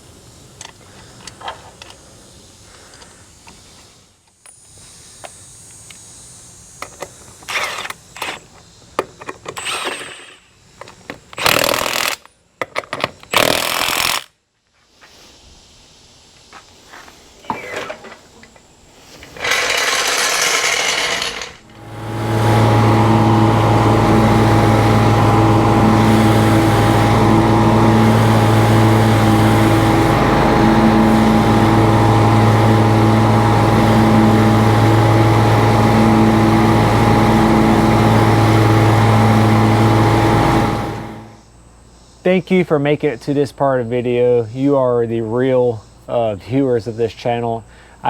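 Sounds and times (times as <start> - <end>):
machine motor droning: 19.4 - 41.4.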